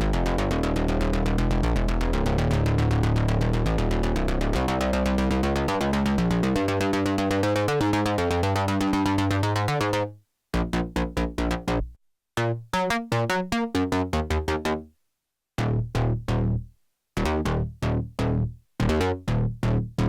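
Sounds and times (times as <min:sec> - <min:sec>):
synthesizer plucked sequence: 0:00.0 - 0:14.8.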